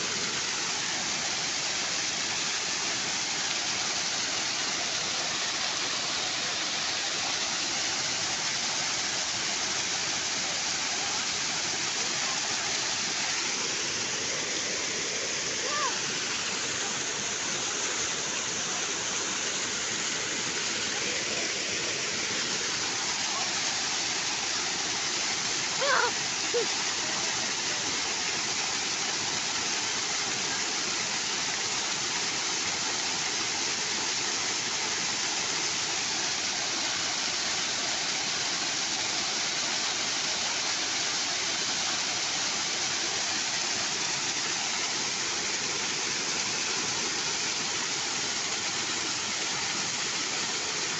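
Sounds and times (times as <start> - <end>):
waterfall rushing: 0.0 - 50.9
person calling out: 15.6 - 16.0, 25.8 - 26.7.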